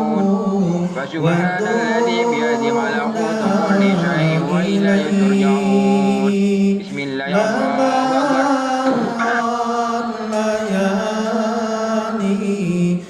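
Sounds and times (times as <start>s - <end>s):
person chanting recitation: 0.0s - 13.0s.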